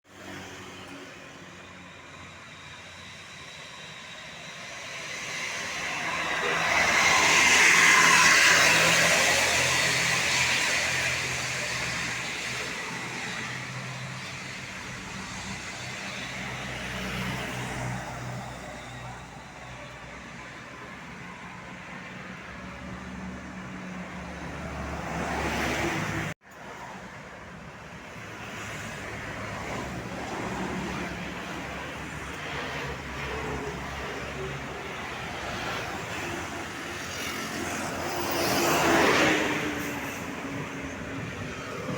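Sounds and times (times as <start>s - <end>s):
road traffic passing: 0.0s - 41.9s
vehicle passing loudly: 4.8s - 13.8s.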